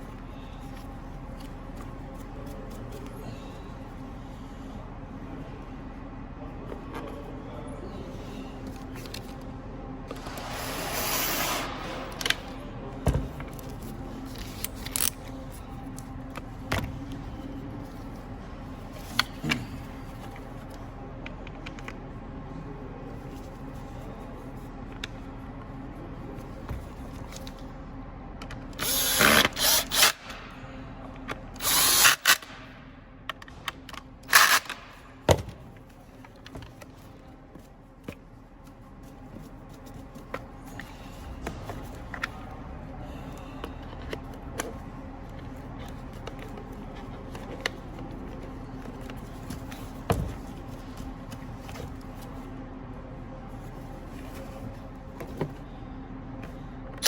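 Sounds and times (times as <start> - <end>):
power drill running: 10.3 - 11.8, 28.8 - 30.3, 31.6 - 32.4.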